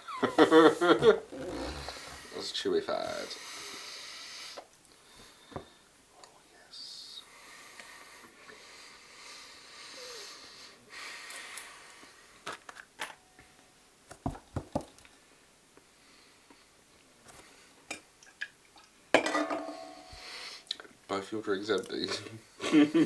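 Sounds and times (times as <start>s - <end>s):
person sniffing: 0.2s - 2.4s
person chewing: 0.9s - 2.3s.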